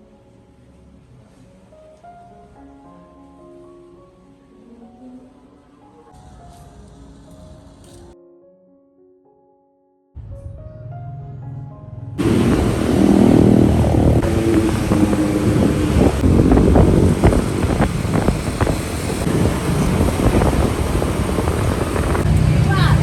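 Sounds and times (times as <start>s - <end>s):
soft piano tune: 0.0s - 23.0s
loud traffic noise: 12.2s - 23.0s
wind rumbling on microphone: 12.2s - 23.0s.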